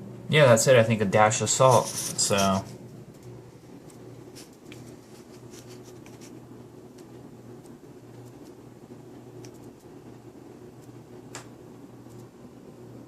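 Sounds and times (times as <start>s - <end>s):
low electrical hum: 0.0s - 13.0s
light scraping: 1.6s - 2.8s.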